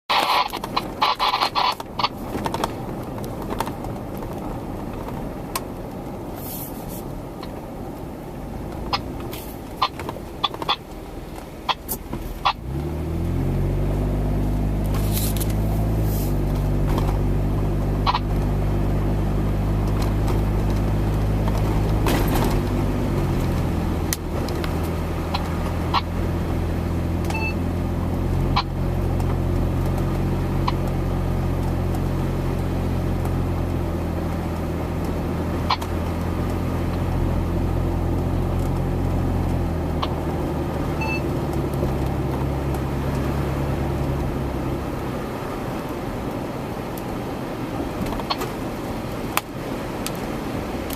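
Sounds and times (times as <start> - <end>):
engine starting and running: 8.5 - 32.0.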